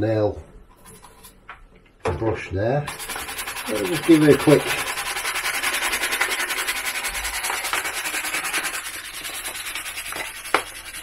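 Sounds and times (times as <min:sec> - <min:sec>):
brush scrubbing plastic in water: 0:02.9 - 0:11.0.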